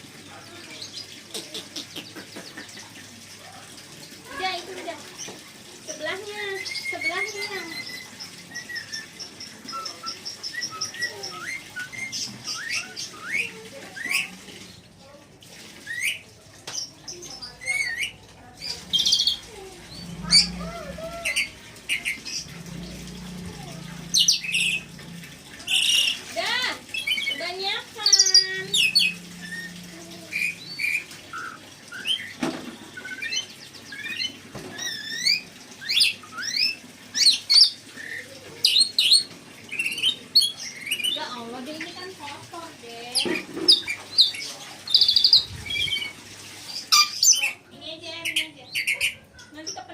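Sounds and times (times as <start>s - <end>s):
high ticking bird notes: 15.9s - 38.3s.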